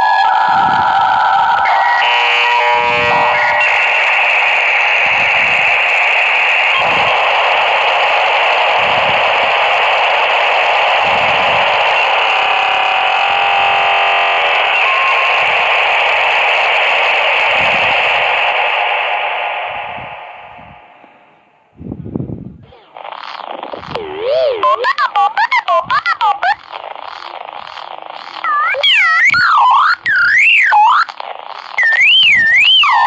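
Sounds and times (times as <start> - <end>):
modem data noise hiss: 0.0 - 21.1, 22.6 - 33.0
modem handshake tones: 22.7 - 33.0.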